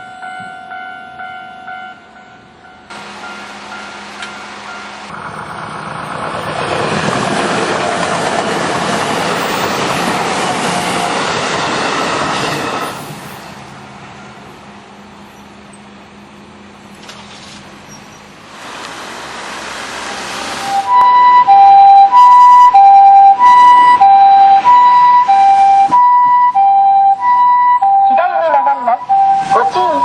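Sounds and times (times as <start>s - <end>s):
train wheels rumbling on rails: 2.5s - 20.9s.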